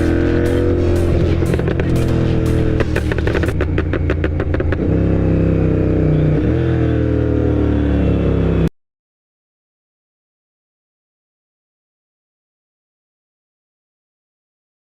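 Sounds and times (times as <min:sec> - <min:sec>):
motorcycle exhaust crackles and pops: 0:00.0 - 0:05.2
motorcycle engine running: 0:00.0 - 0:08.7.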